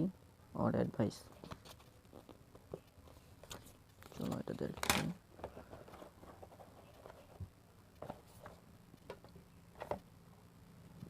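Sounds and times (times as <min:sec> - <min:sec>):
plastic case clicks and rustles: 0:03.5 - 0:05.2.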